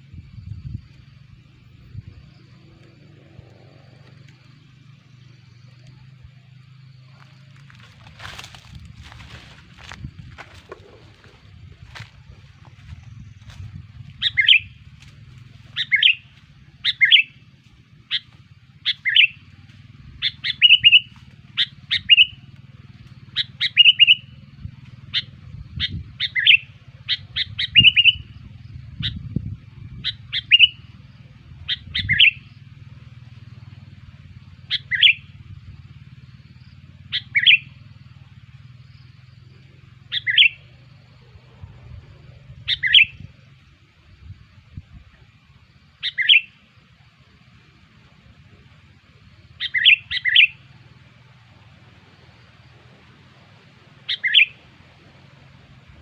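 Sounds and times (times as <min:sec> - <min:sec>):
low steady hum: 0:00.0 - 0:56.0
bird chirping: 0:00.3 - 0:17.5, 0:18.1 - 0:24.5, 0:25.1 - 0:32.6, 0:34.6 - 0:35.4, 0:36.4 - 0:37.8, 0:38.8 - 0:43.5, 0:46.0 - 0:46.7, 0:49.3 - 0:50.8, 0:54.0 - 0:54.7.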